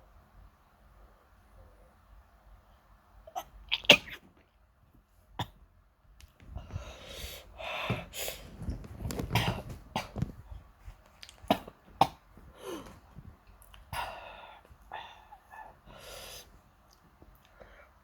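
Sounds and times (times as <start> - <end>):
person breathing hard: 6.6 - 8.6, 12.5 - 13.2, 13.8 - 16.6, 17.4 - 18.0
person coughing and sniffing: 9.2 - 10.3, 11.4 - 13.0.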